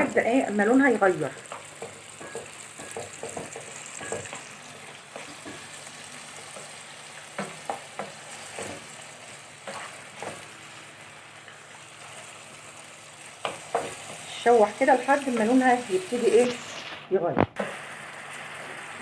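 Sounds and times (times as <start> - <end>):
chicken sizzling in frying pan: 0.0 - 19.0
utensil scraping pan: 9.6 - 10.4.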